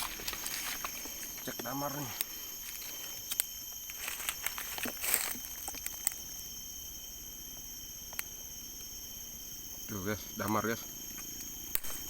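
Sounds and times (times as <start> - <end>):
rustles and snaps of dry leaves: 0.0 - 6.6
forest insects droning: 0.0 - 12.0.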